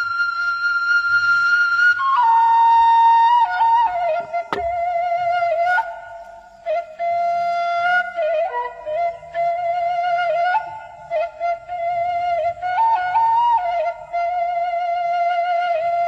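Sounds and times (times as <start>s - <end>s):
sharp click: 4.5s - 4.9s.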